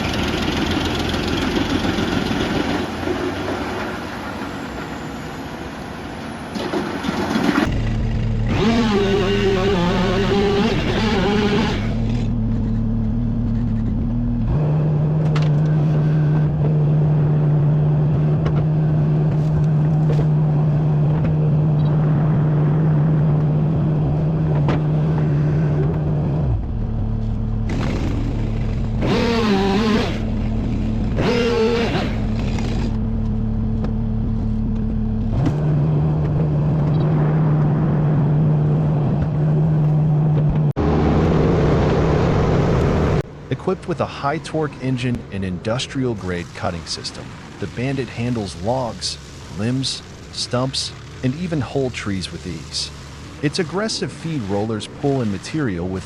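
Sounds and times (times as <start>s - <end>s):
wood chipper engine humming: 0.0s - 4.0s, 15.1s - 36.9s, 46.4s - 55.5s
rough noisy sound: 6.5s - 17.5s, 18.3s - 38.0s, 39.2s - 56.0s.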